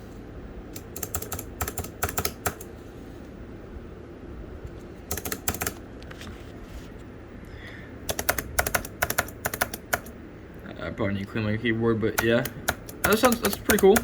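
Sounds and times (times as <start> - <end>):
keyboard key clicks: 0.8 - 2.7, 5.1 - 5.8, 8.1 - 10.1, 12.2 - 14.0.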